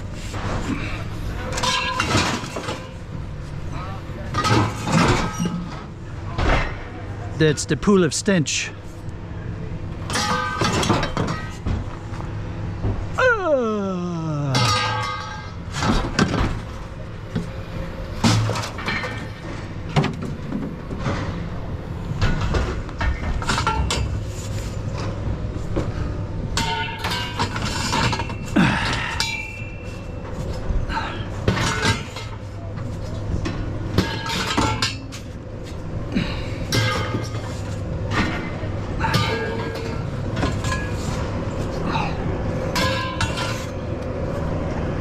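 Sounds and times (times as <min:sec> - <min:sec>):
steady low hum: 0:00.0 - 0:45.0
scrap metal clanking: 0:00.1 - 0:05.9, 0:31.4 - 0:42.0, 0:42.7 - 0:44.4.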